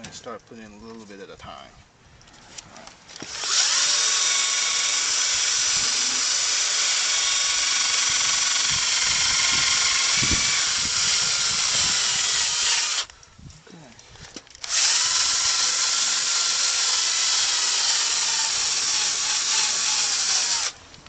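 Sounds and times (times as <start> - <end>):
electric drill high whine: 3.3 - 13.1, 14.6 - 20.8.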